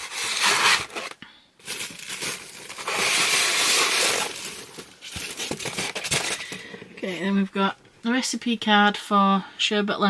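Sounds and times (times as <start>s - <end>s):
packaging crinkling and rustling: 0.0s - 7.4s.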